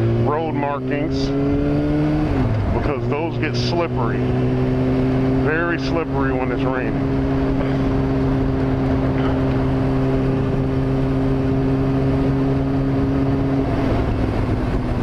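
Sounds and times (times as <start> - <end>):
motorcycle engine cruising: 0.0 - 15.0
wind noise: 7.0 - 15.0.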